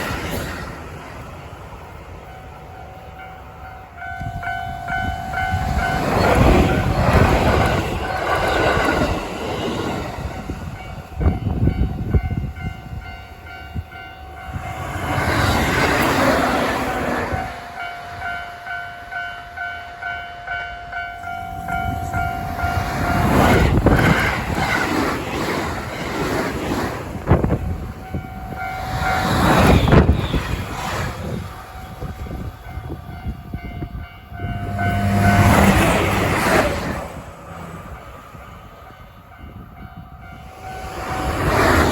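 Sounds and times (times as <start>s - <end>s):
trains passing at speed: 0.0s - 41.9s
level crossing warning bell: 2.2s - 9.6s, 10.4s - 23.6s, 31.7s - 36.7s
wheels clattering over rail joints: 22.2s - 32.2s.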